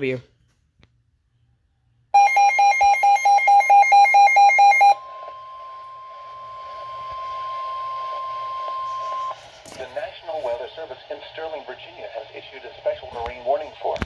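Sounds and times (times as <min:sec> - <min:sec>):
loud electronic alert beeping: 0:02.2 - 0:05.2
steady warning alarm tone: 0:02.2 - 0:10.7
radio hiss: 0:06.7 - 0:14.0.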